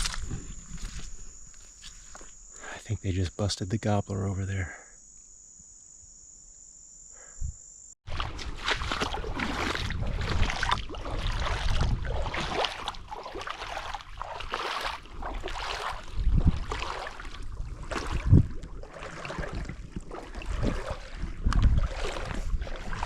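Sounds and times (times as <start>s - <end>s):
high insect trill: 0.0s - 8.0s.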